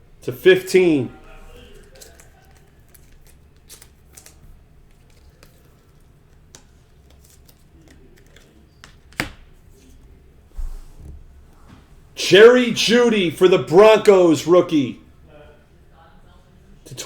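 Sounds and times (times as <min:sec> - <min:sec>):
cards clicking and rustling: 0:01.5 - 0:10.0.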